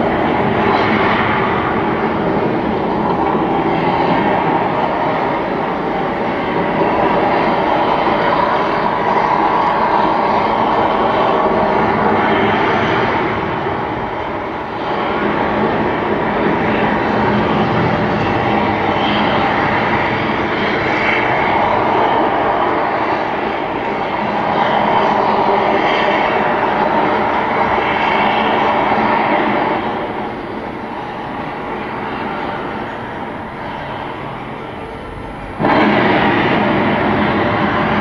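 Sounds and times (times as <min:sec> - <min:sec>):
volcano eruption roaring rumble: 0:00.0 - 0:38.0.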